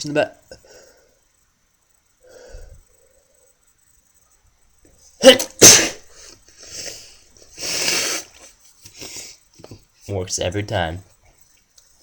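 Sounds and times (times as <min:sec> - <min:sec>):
man sneezing: 0:05.2 - 0:06.2.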